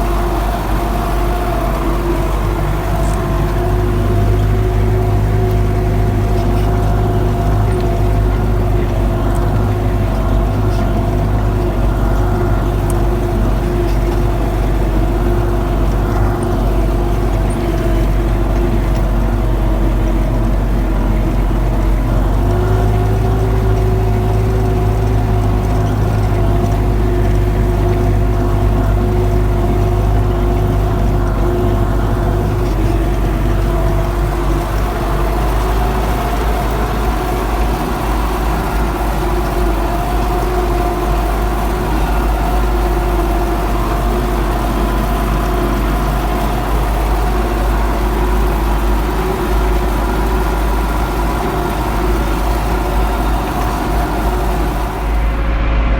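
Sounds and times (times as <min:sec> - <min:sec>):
tractor diesel engine running: 0:00.0 - 0:55.9.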